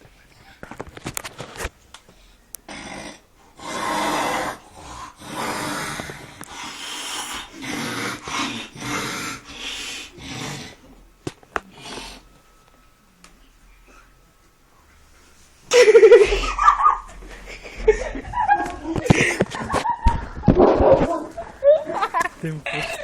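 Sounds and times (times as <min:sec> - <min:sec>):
person snoring: 0:02.7 - 0:10.9.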